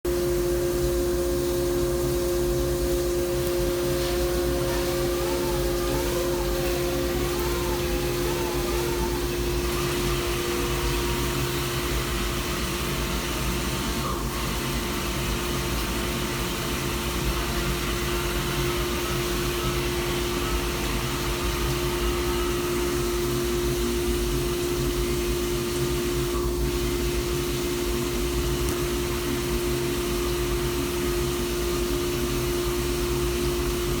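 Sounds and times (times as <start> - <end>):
higher machine tone: 0.1 - 14.5
cnc lathe machining: 0.1 - 34.0.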